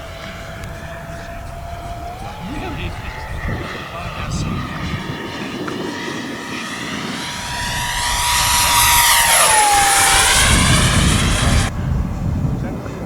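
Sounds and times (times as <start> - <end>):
model jet fan whine passing: 0.0 - 12.4.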